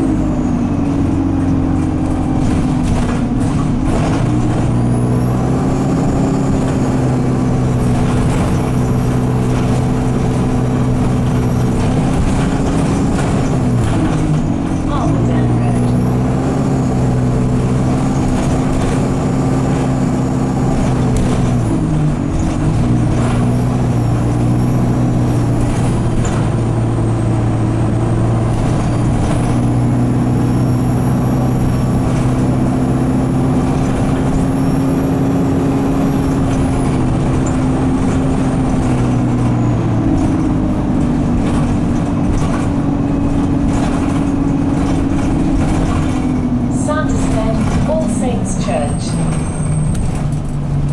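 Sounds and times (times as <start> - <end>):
bus engine drone: 0.0 - 50.9.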